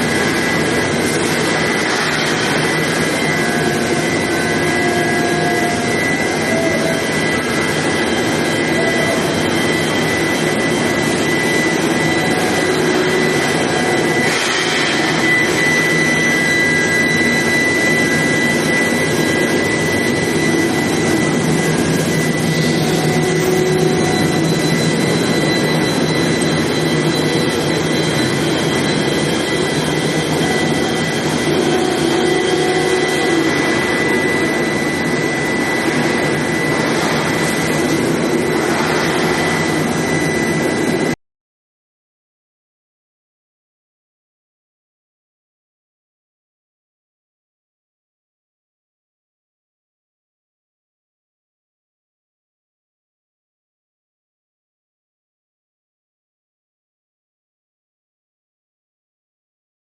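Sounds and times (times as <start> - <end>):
high steady whine: 0.0 - 41.2
industrial drone: 0.0 - 41.2.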